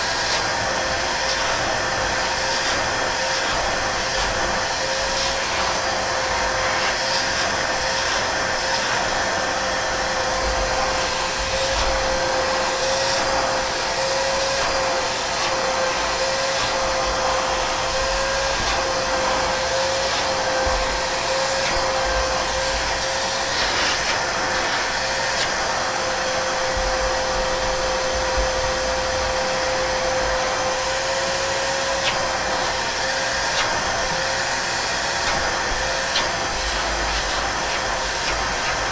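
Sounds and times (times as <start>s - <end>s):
vacuum cleaner running: 0.0s - 38.9s.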